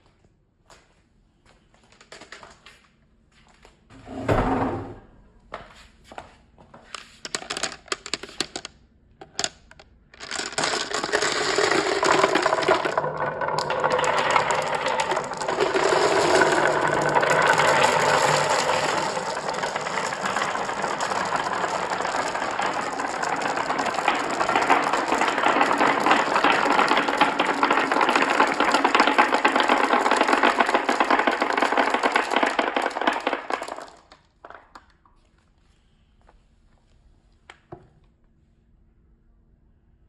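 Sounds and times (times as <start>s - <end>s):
marbles rattling down a track: 7.2s - 8.7s, 9.3s - 34.8s.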